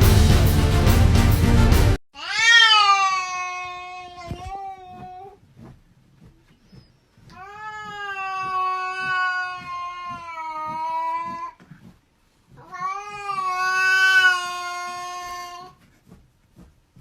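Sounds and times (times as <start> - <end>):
cat yowling: 2.2 - 5.4, 7.4 - 11.6, 12.6 - 15.7.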